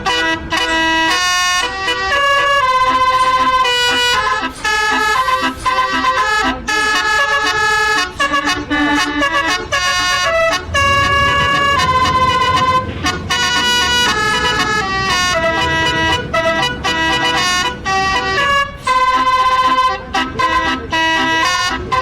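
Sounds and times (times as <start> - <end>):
musical air horn melody: 0.0 - 22.0.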